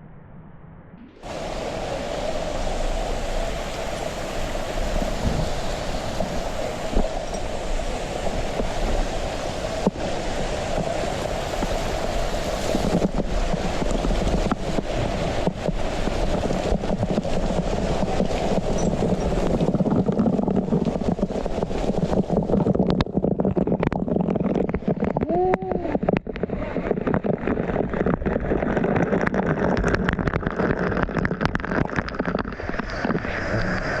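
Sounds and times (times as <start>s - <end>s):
waterfall rushing: 1.2s - 19.8s
knocks and crackles on microphone: 2.5s - 34.0s.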